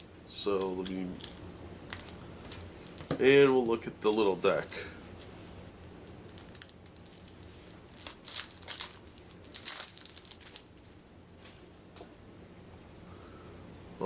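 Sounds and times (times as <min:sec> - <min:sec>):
plastic wrapping crinkling and tearing: 0:00.6 - 0:05.4, 0:06.0 - 0:11.0.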